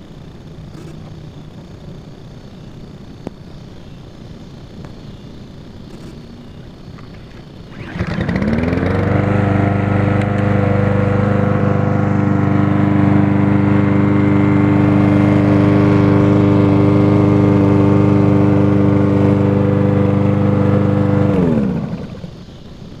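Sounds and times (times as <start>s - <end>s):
lawn mower engine running: 7.0s - 22.6s.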